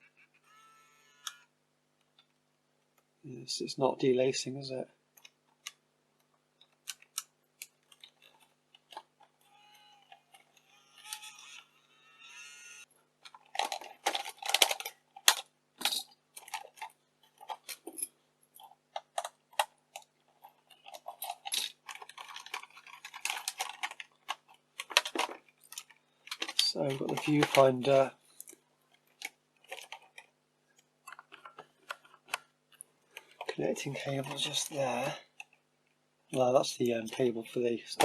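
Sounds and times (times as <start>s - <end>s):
plastic parts clicking and scraping: 5.2s - 12.5s, 13.2s - 35.6s
wavering whirr: 9.5s - 12.9s.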